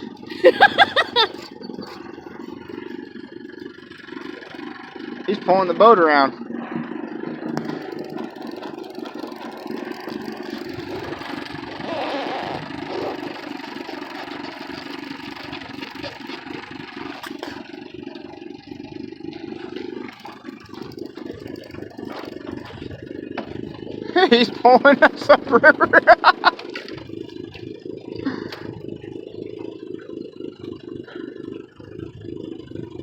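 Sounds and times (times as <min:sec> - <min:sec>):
outboard motor idling: 0:00.0 - 0:33.0.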